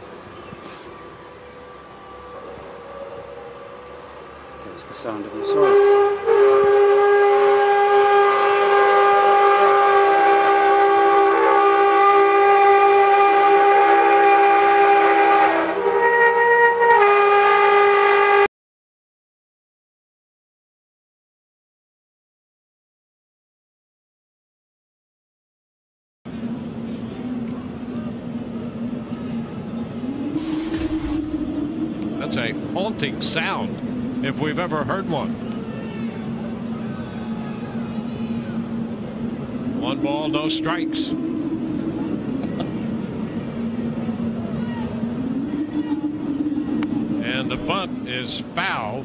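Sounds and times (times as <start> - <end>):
low horn-like drone: 0.6 - 18.5, 28.1 - 34.2, 35.5 - 48.1
multi-chime train horn chord: 1.1 - 18.5.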